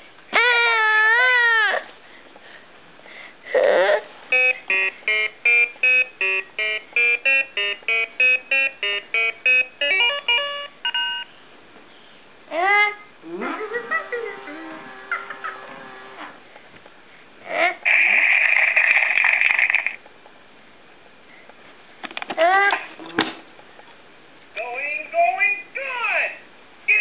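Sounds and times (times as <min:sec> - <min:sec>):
toy playing electronic beeping tune: 0:04.3 - 0:11.3.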